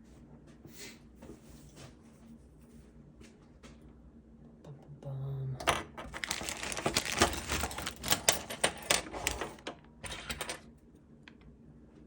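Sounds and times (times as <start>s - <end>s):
small hard parts rattling: 5.8s - 10.6s.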